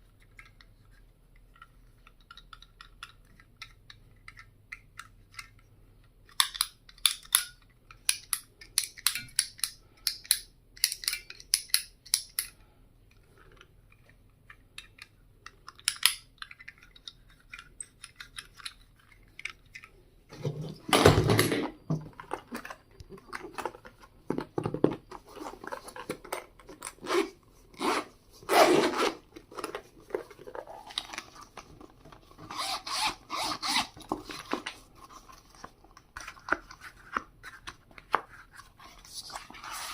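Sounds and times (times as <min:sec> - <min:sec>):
stationery rustling and scraping: 0:16.7 - 0:39.9.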